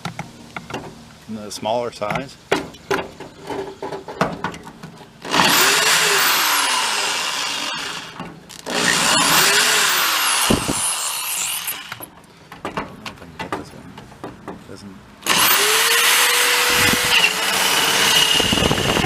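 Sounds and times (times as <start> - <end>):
power drill drilling into bolt: 5.2 - 12.0, 15.2 - 19.0.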